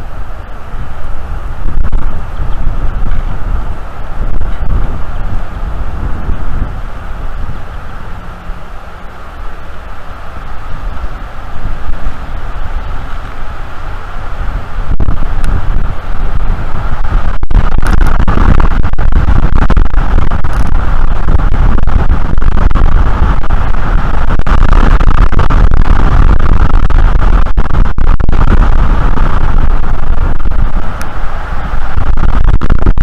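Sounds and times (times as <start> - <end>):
wind buffeting microphone: 0.0 - 33.0.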